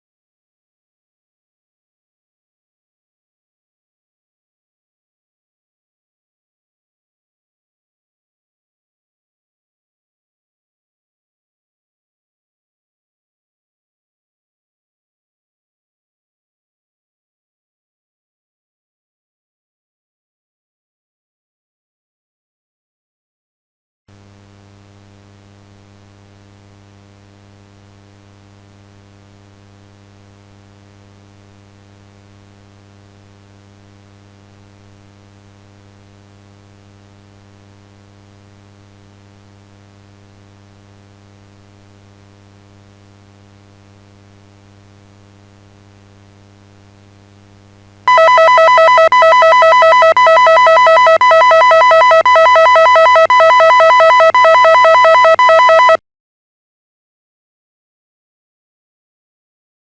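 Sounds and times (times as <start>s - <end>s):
wavering electronic alert tone: 48.1s - 56.0s.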